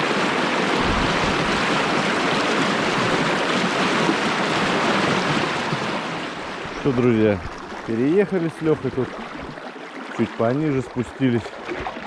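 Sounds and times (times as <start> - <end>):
river water rushing over rapids: 0.0 - 10.1.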